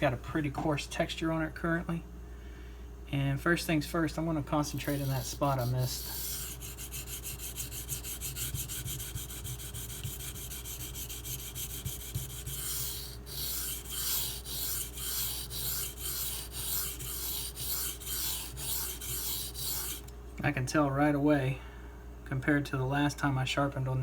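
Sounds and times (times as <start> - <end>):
knife scraping on whetstone: 4.7 - 20.1.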